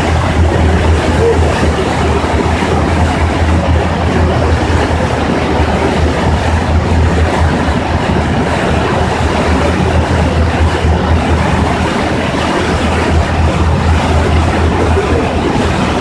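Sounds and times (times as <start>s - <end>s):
low engine drone: 0.0s - 16.0s
rushing water: 0.0s - 16.0s
wind noise: 0.0s - 16.0s.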